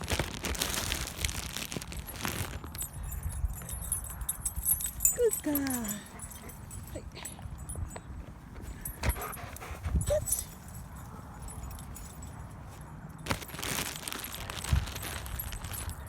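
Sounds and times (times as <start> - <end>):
rustle: 0.0 - 7.4, 8.6 - 16.0
dog whimpering: 9.1 - 10.5.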